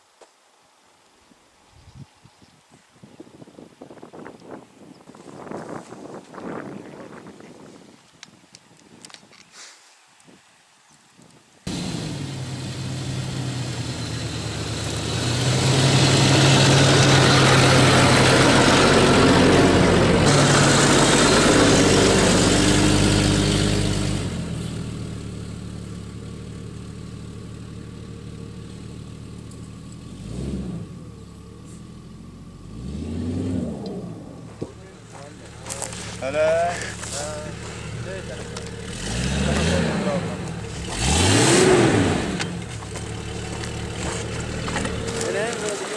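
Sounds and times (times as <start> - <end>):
car engine running: 11.7 - 45.9
engine revving: 11.7 - 45.9.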